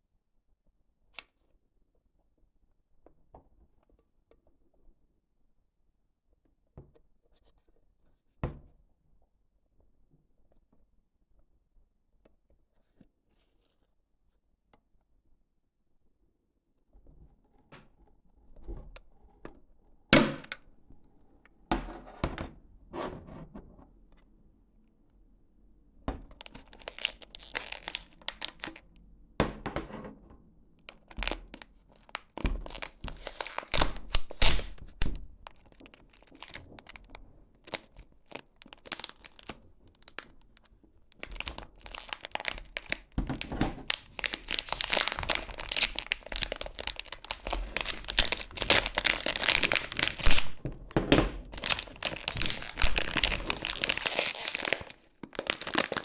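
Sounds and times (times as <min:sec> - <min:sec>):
wrapping crinkling and tearing: 0:26.4 - 0:28.8, 0:30.9 - 0:56.0.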